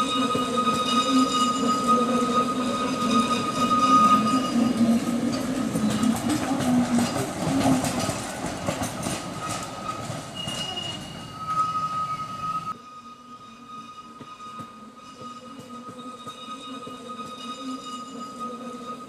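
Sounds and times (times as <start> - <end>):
high wheel squeal: 0.0 - 8.3, 9.2 - 19.0
wheels clicking over rail joints: 0.2 - 11.7.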